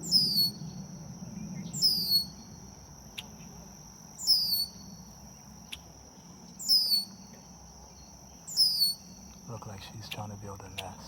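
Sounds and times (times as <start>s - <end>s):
high-pitched insect drone: 1.6s - 11.0s.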